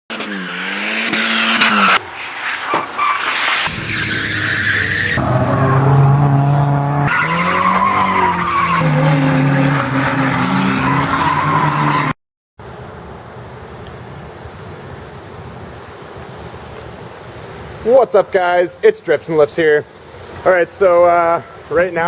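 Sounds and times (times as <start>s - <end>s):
car engines revving hard: 0.1s - 2.1s, 3.2s - 12.2s
tyres spinning and sliding: 0.1s - 12.2s.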